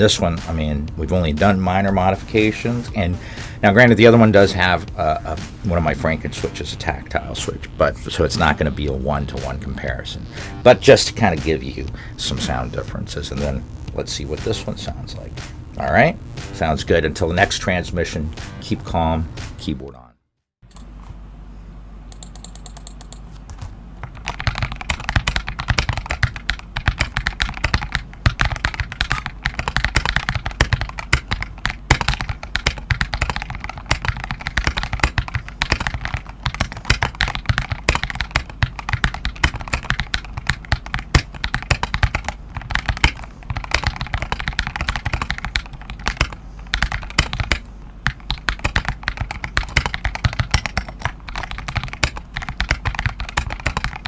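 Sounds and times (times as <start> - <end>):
typing on a mechanical keyboard: 22.2 - 23.2, 24.0 - 54.0.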